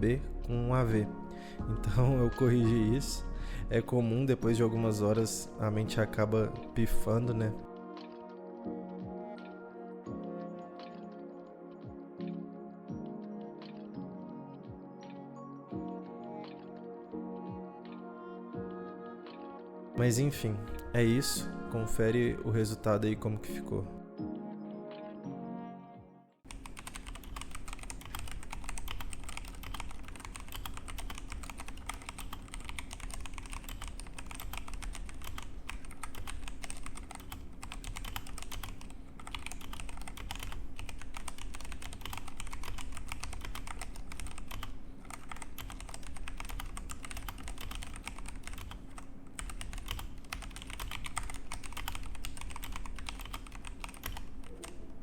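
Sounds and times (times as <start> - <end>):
fast typing on mechanical keyboard: 26.5 - 54.8.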